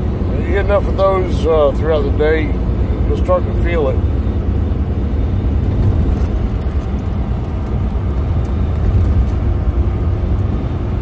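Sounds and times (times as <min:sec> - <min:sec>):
road noise: 0:00.0 - 0:11.0
truck engine rumble: 0:00.0 - 0:11.0.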